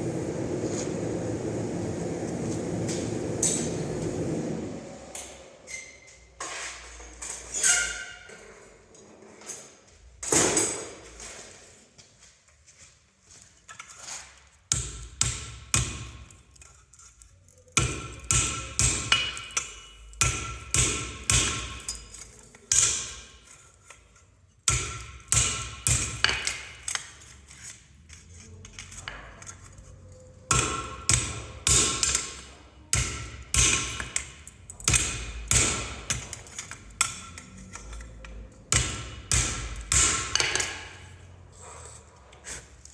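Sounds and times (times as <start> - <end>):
hammer striking steel on anvil: 17.8 - 23.5, 24.7 - 27.1, 30.5 - 37.8, 38.7 - 41.1.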